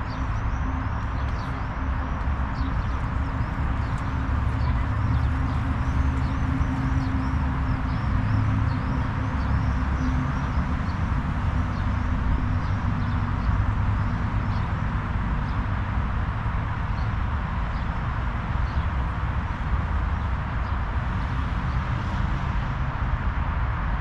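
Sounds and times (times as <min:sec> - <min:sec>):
small birds chirping: 0:00.0 - 0:14.8
steady low rumble: 0:00.0 - 0:24.0.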